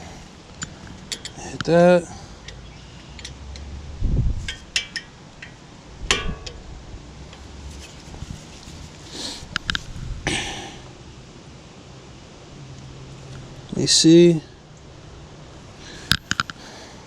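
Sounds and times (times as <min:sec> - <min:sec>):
mallet tapping metal punch: 0:04.5 - 0:06.7
hard ringing metal strike: 0:04.5 - 0:06.8.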